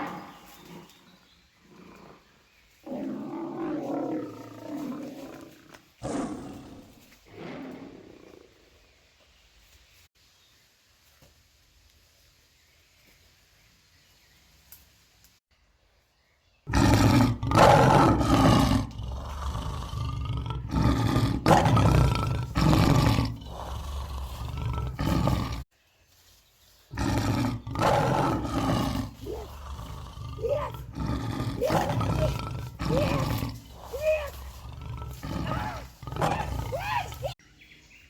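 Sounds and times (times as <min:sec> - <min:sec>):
lion roaring: 0:01.7 - 0:08.7, 0:16.7 - 0:25.7, 0:26.9 - 0:37.4.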